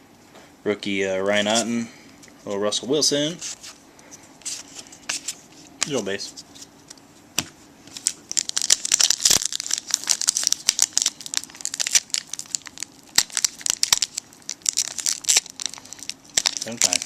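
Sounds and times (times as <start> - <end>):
foil wrapper crinkling and tearing: 7.9 - 17.0.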